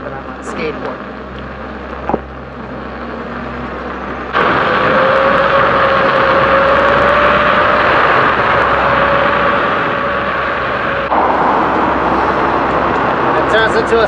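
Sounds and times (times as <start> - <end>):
electric motor whine: 0.0 - 14.0
wind rushing: 4.4 - 14.0.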